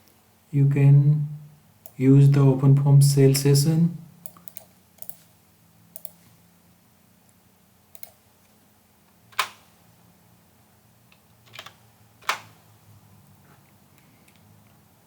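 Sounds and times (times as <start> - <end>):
computer keyboard keystrokes: 4.2 - 5.2, 6.0 - 6.2, 8.0 - 8.2.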